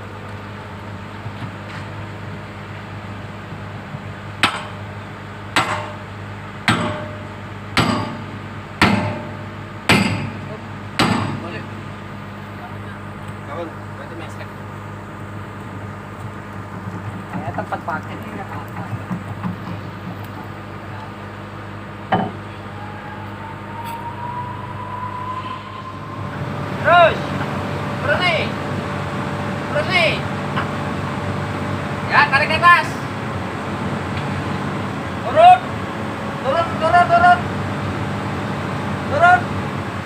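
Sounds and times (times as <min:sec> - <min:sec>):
excavator engine idling: 0:00.0 - 0:40.0
hammer striking steel: 0:04.4 - 0:04.8, 0:05.6 - 0:06.1, 0:06.7 - 0:11.4
faint rising whine: 0:19.5 - 0:36.9.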